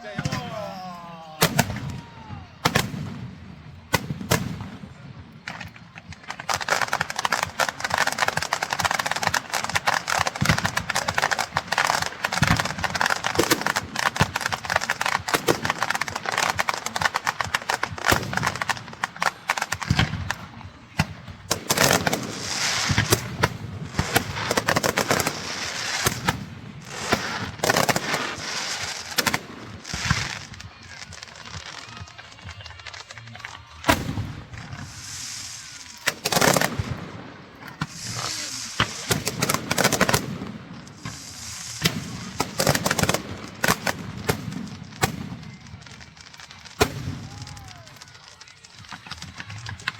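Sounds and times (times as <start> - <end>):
firecrackers crackling: 0.0 - 49.9.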